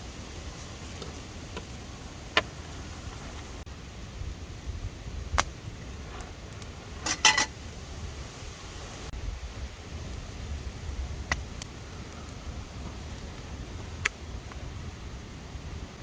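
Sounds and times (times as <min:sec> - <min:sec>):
wind rumble on microphone: 0:00.0 - 0:16.0
metallic clinks of cookware: 0:07.0 - 0:07.5.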